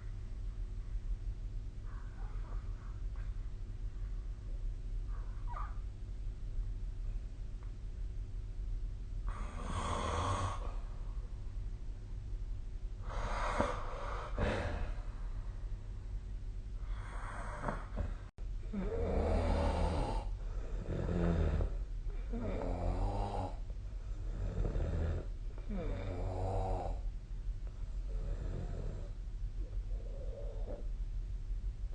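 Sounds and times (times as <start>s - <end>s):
person snoring: 9.3s - 10.8s, 13.0s - 15.0s, 16.8s - 23.6s, 24.2s - 27.0s, 28.1s - 29.2s, 29.9s - 30.9s.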